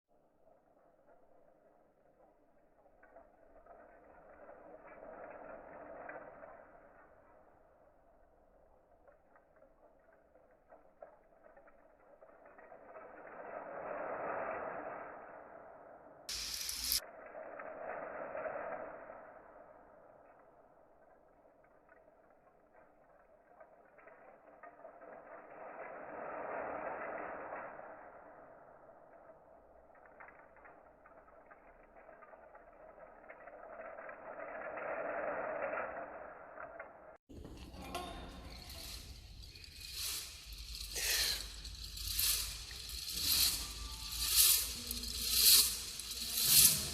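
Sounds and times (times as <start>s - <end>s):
hiss: 16.3s - 17.0s, 38.7s - 46.9s
chopsticks clicking and rattling: 37.8s - 46.9s.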